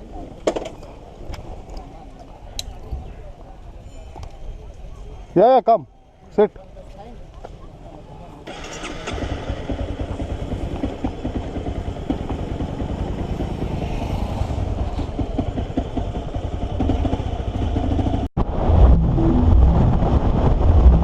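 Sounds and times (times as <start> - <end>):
motorcycle engine running: 9.1 - 13.8
wind rumbling on microphone: 9.8 - 21.0.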